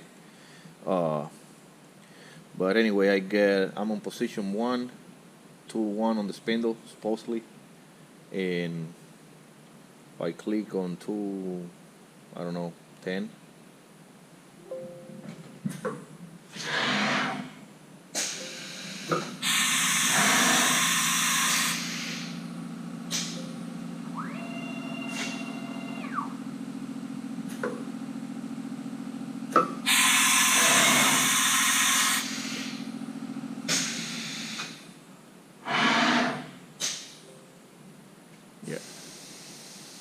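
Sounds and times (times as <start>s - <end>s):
air hiss bursts: 16.5s - 22.4s, 23.1s - 23.5s, 25.1s - 25.4s, 29.8s - 32.9s, 33.7s - 34.9s, 35.6s - 37.2s, 38.7s - 40.0s
motor hum: 18.3s - 38.0s
rising and falling whine: 20.0s - 29.5s.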